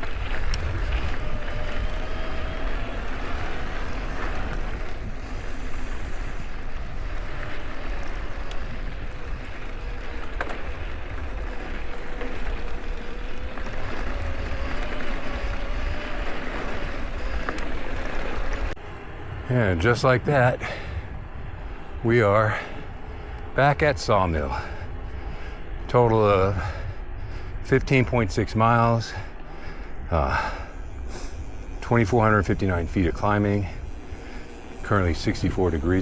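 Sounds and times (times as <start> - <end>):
bike tyres rolling on dirt: 0.0 - 36.0
wind buffeting microphone: 0.0 - 36.0
faint wavering whine: 28.6 - 36.0.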